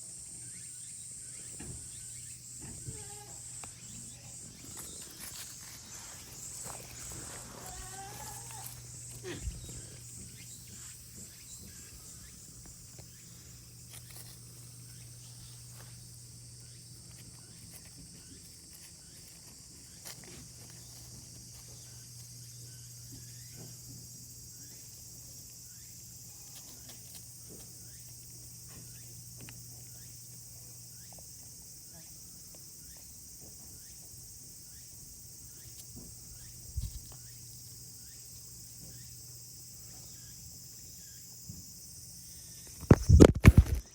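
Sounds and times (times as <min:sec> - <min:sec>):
insects droning: 0:00.0 - 0:43.9.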